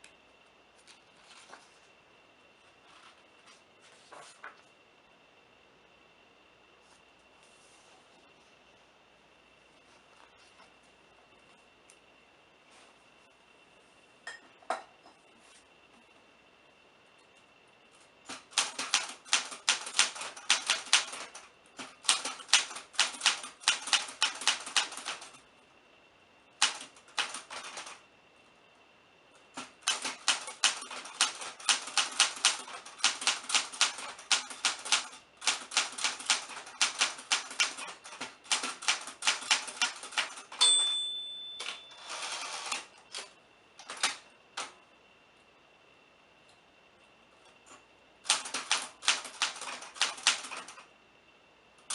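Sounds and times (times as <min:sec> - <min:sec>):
typewriter carriage return rasp: 0:18.3 - 0:25.4, 0:26.6 - 0:28.0, 0:29.6 - 0:40.7, 0:41.6 - 0:44.7, 0:48.2 - 0:50.8
typewriter margin bell: 0:38.5 - 0:42.9.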